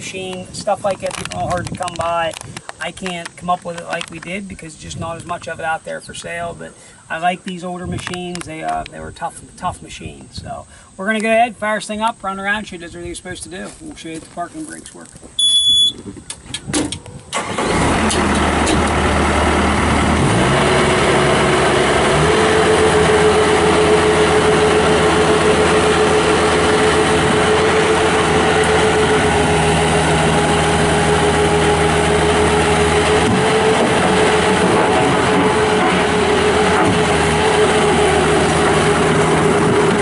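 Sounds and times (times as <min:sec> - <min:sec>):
short beep: 0:15.4 - 0:16.0
diesel engine starting and running: 0:16.5 - 0:40.0.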